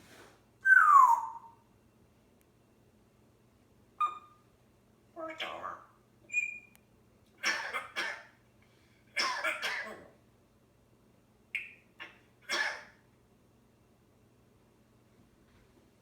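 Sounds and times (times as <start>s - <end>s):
parrot imitating coughing: 7.4s - 8.4s, 9.2s - 10.1s, 12.0s - 13.0s.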